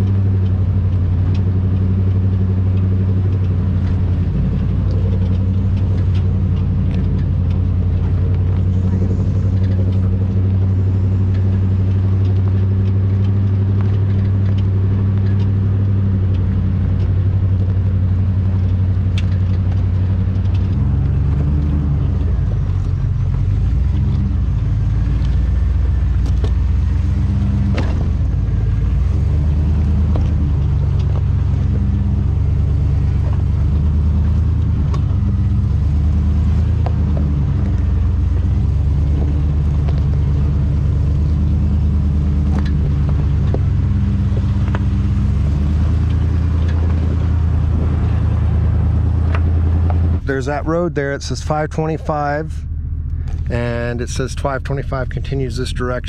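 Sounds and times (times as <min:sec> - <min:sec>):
pickup engine droning: 0:00.0 - 0:56.0.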